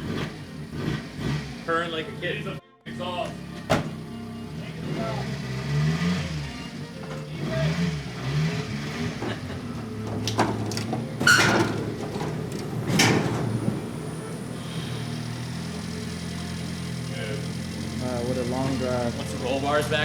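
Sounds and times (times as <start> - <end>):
engine revving: 0.0 - 20.0
small truck engine idling: 0.0 - 20.0
sharp clunks: 3.6 - 4.1, 9.0 - 14.6.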